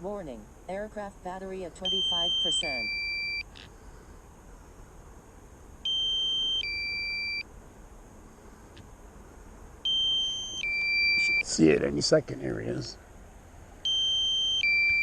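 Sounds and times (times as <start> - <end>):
two-tone alarm beeping: 1.7 - 3.5, 5.8 - 7.5, 9.8 - 11.5, 13.8 - 15.0.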